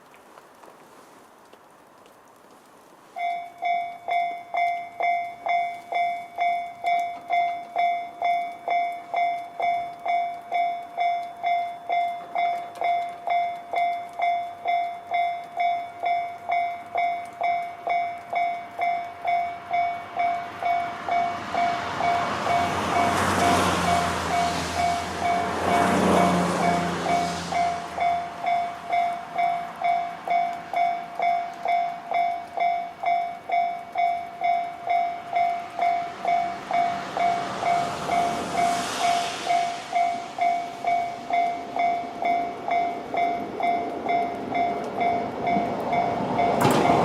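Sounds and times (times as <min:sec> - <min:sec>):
level crossing warning bell: 0:03.2 - 0:47.0
electric train running: 0:18.3 - 0:31.8, 0:33.4 - 0:47.0.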